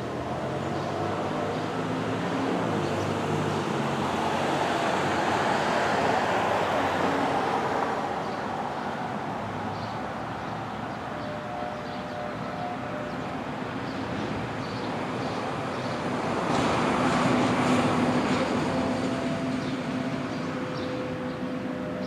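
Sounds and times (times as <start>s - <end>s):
road traffic: 0.0s - 22.0s
rotating siren wailing: 10.7s - 13.7s.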